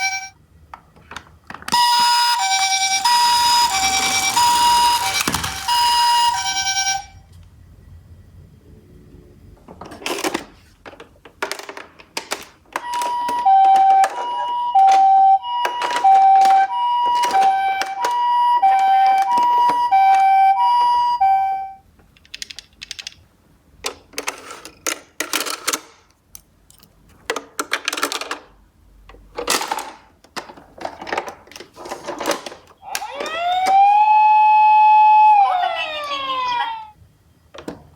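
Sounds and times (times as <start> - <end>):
toy two-tone siren: 0.0 - 0.3, 1.7 - 7.2, 12.8 - 21.8, 32.8 - 36.9
toy cars clattering: 1.0 - 7.1, 9.8 - 20.4, 22.1 - 23.2, 23.8 - 28.6, 29.2 - 33.8
toy cars rolling down slope: 1.7 - 7.2, 10.0 - 20.5.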